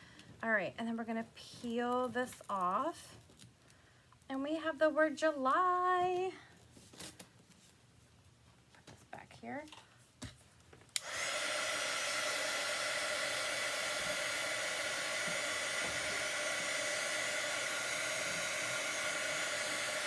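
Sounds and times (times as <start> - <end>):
hot-air dryer whirring hum: 10.9 - 20.0
hot-air dryer switch click: 11.0 - 11.6.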